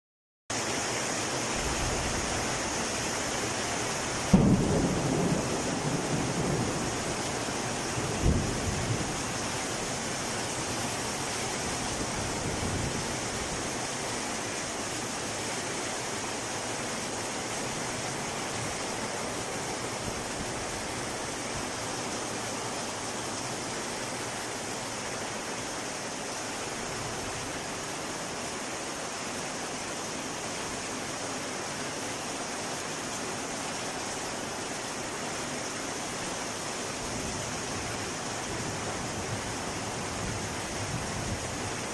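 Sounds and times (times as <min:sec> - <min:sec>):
heavy rain: 0:00.5 - 0:41.9
thunder: 0:04.2 - 0:09.3.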